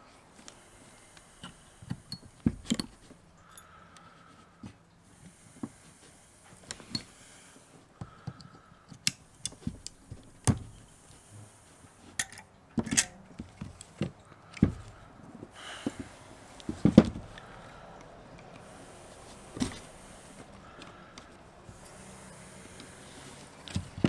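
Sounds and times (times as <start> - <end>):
plastic and metal parts clattering: 12.0 - 15.0.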